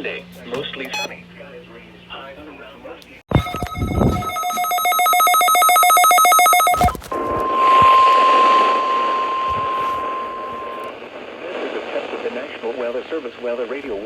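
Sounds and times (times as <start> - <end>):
pulsing electronic ringing tone: 3.3 - 10.9
steady warning tone: 3.3 - 10.9
radio static: 3.3 - 14.0.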